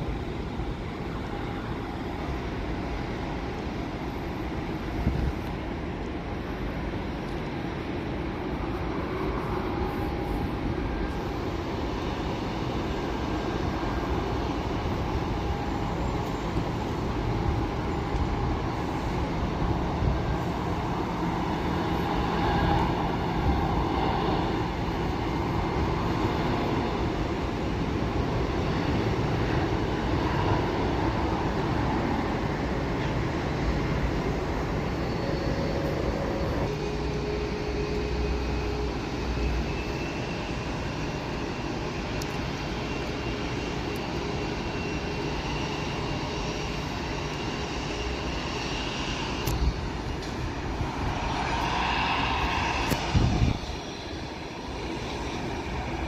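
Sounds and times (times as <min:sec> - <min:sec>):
airliner engines rumbling: 0:00.0 - 0:56.0.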